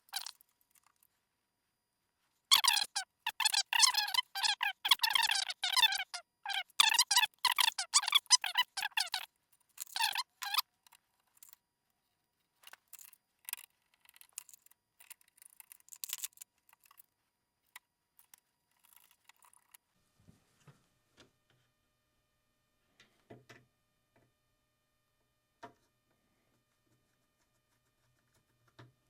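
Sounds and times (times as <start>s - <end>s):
high-pitched squeak: 2.5s - 9.2s, 9.8s - 10.6s.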